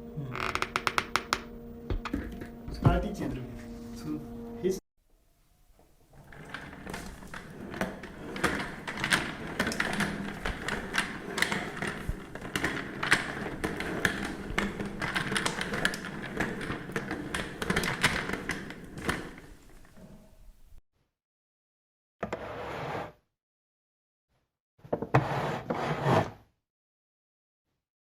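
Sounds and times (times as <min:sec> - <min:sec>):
chair creaking and clicking: 0:00.2 - 0:02.6, 0:05.7 - 0:20.5.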